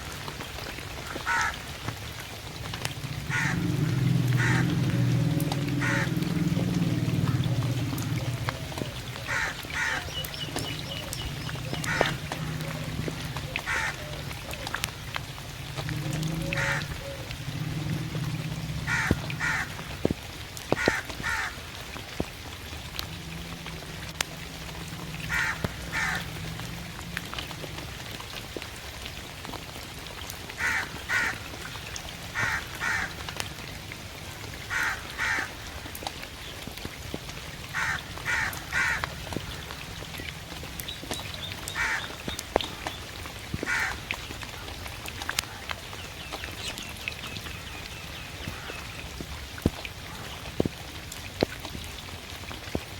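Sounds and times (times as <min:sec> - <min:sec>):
rain hiss: 0:00.0 - 0:52.9
water drips ticking: 0:00.0 - 0:52.9
raven cawing: 0:01.0 - 0:01.7, 0:03.0 - 0:14.8, 0:16.0 - 0:19.9, 0:20.7 - 0:21.7, 0:24.9 - 0:26.6, 0:30.6 - 0:33.4, 0:34.6 - 0:35.8, 0:37.7 - 0:39.8, 0:41.6 - 0:42.9, 0:43.6 - 0:44.1.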